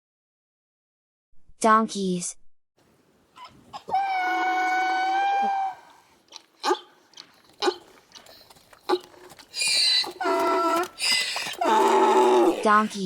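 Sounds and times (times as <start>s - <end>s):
donkey braying: 3.3s - 13.0s.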